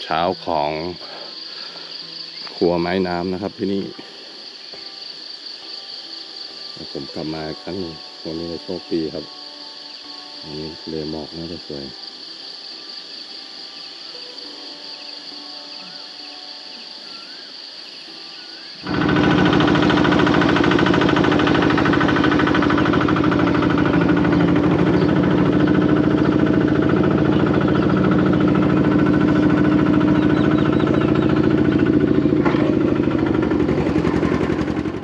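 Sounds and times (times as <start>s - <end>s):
outdoor ambience: 0.0s - 35.0s
vehicle engine running: 18.8s - 35.0s.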